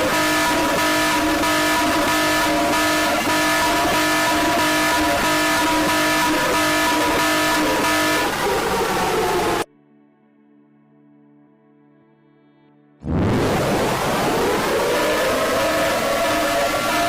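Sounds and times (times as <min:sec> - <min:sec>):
emergency alert tones: 0:00.0 - 0:09.7
harsh rough noise: 0:13.0 - 0:17.0.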